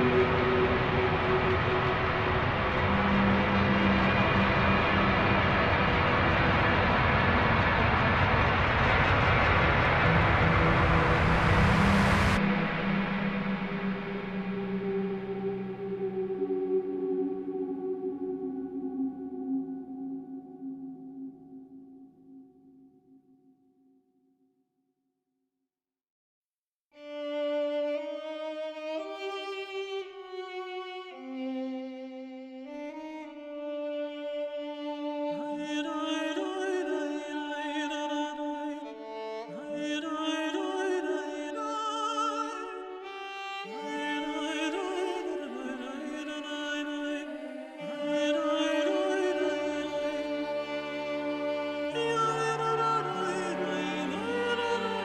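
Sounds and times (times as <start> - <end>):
bowed string music: 0.0 - 21.6, 27.0 - 55.0.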